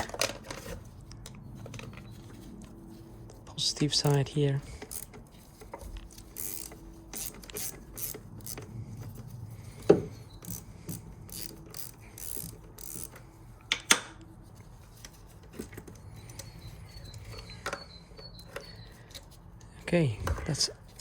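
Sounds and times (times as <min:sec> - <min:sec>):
ratchet wrench clicking: 0:04.8 - 0:05.2, 0:06.0 - 0:08.7, 0:10.4 - 0:13.2.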